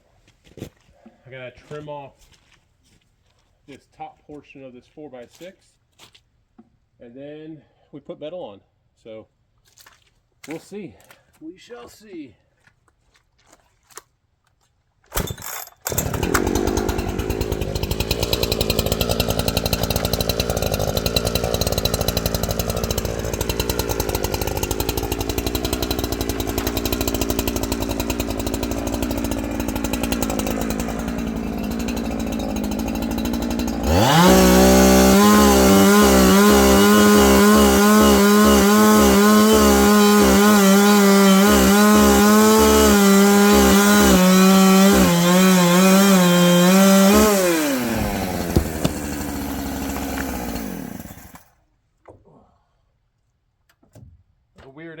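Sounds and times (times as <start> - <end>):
chainsaw cutting wooden post: 15.1 - 51.6
chainsaw idling and revving: 15.4 - 51.6.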